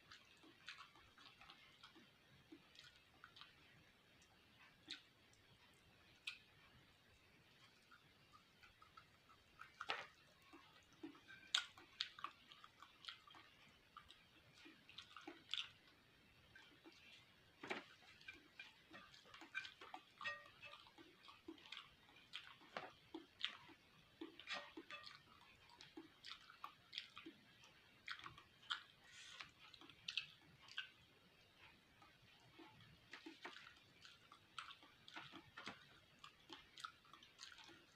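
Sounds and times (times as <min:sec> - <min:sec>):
person chewing wetly: 0:00.0 - 0:37.9.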